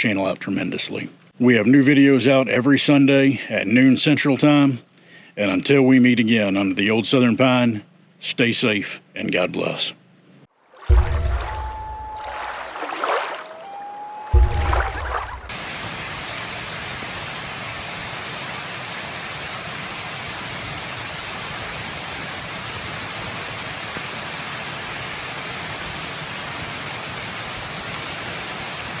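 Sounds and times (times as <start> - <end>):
music: 10.9 - 12.6, 13.8 - 15.5
steady rushing hiss: 15.5 - 29.0.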